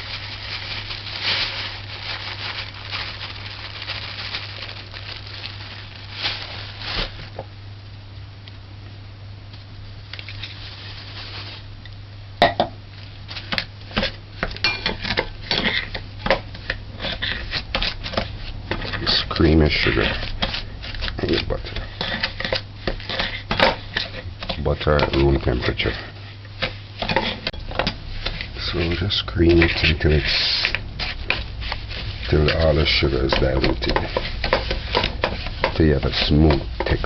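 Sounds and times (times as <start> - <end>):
utensils clinking against bowl: 13.9 - 30.0, 32.4 - 37.0.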